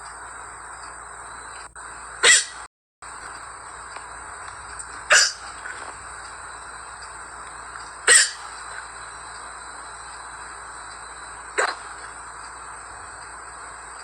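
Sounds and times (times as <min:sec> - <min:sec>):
steady background hiss: 0:00.0 - 0:14.0
girl hiccuping: 0:08.1 - 0:08.4.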